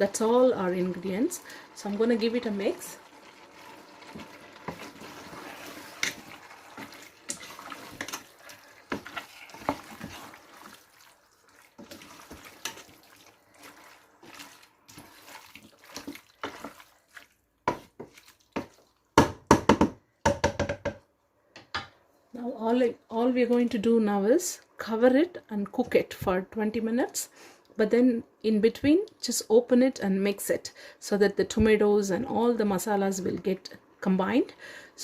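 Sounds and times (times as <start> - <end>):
spoon stirring wet food in pot: 0.1 - 19.2.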